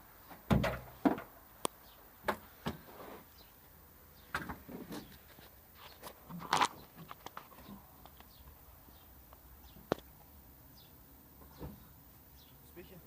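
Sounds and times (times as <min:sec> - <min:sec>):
rustling: 0:04.5 - 0:08.3.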